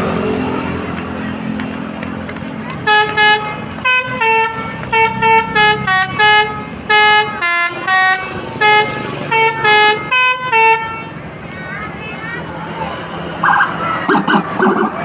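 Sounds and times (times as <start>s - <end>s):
bus horn playing a tune: 2.8s - 11.2s
low vehicle rumble: 11.3s - 15.0s.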